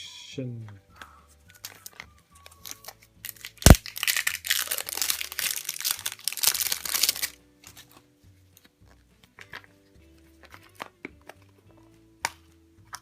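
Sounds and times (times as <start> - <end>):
plastic packaging crinkling: 1.5 - 7.9.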